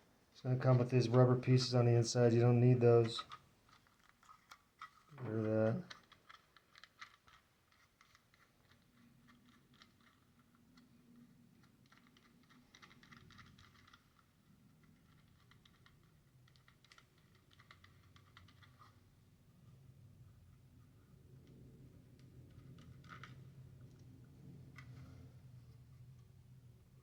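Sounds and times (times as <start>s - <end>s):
small plastic parts clicking: 3.1s - 19.2s, 21.4s - 26.3s.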